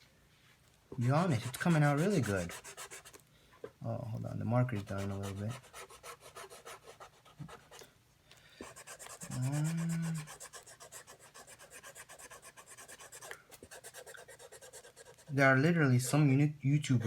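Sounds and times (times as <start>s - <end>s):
marker scribbling: 1.0s - 3.2s, 4.7s - 7.8s, 8.6s - 15.4s
person humming: 9.2s - 10.4s.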